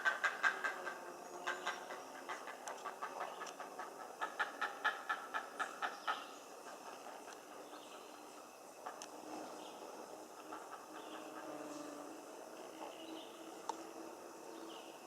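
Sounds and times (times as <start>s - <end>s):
herons squawking: 0.0s - 8.1s.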